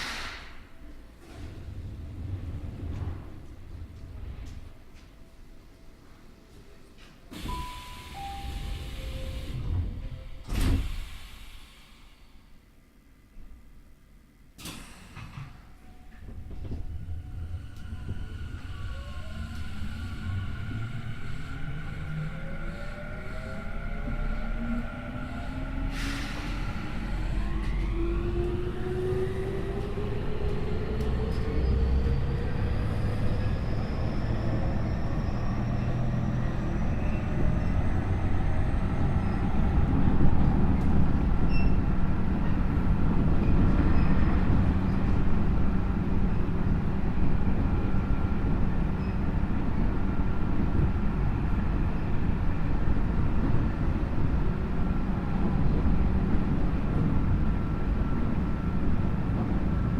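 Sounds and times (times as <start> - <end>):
wheels rumbling on rail: 0.0 - 5.6, 14.6 - 59.9.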